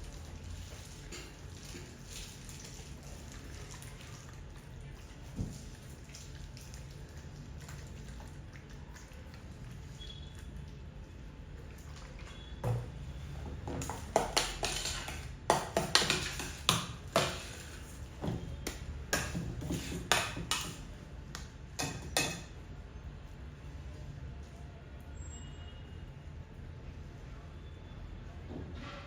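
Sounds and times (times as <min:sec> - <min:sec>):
utensil clinking against bowl: 0:13.8 - 0:17.7.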